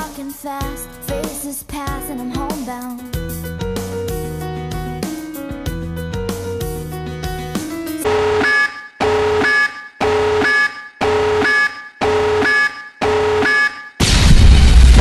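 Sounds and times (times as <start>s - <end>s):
alarm-like buzzing beeps: 8.0s - 14.0s
loud blast: 14.0s - 15.0s.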